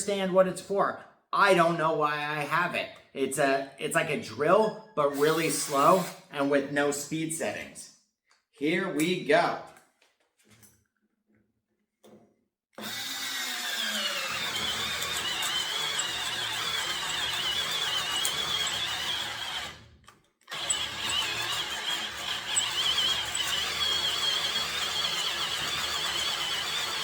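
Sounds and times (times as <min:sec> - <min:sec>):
high squeal of cutting bit: 0:04.6 - 0:06.2, 0:12.8 - 0:19.6, 0:20.5 - 0:27.0
cordless screwdriver motor under load: 0:12.8 - 0:19.8, 0:20.5 - 0:27.0.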